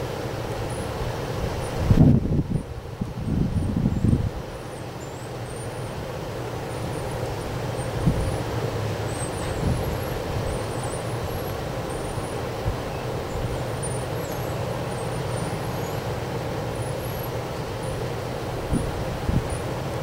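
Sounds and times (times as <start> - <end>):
wind blowing across microphone: 1.1 - 4.5, 7.9 - 8.5, 9.4 - 11.5, 18.3 - 20.0.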